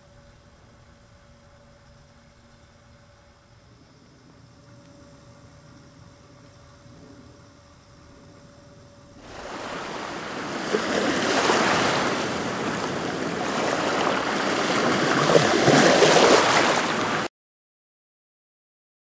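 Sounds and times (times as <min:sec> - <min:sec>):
waves washing ashore: 0:09.2 - 0:17.3.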